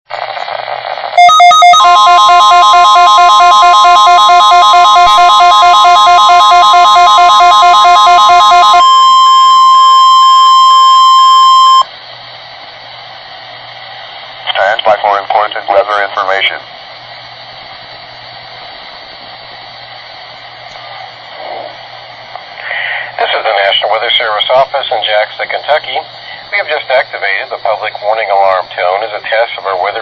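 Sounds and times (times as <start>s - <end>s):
radio hiss: 0.1s - 30.0s
two-pitch alarm beeps: 1.2s - 11.9s
steady warning alarm tone: 1.2s - 12.0s.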